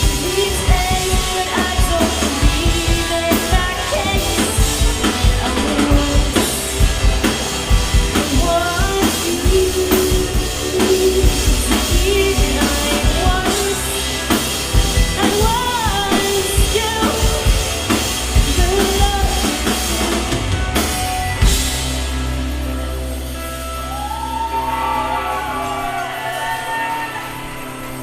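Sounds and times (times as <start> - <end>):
person singing: 0.0 - 6.6, 8.1 - 20.8
drum kit beating: 0.0 - 28.0
rock band playing: 0.0 - 28.0.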